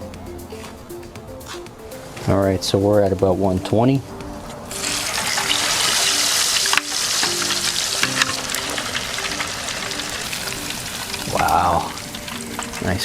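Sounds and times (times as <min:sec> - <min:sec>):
steak sizzling in hot oil: 0:04.7 - 0:13.0.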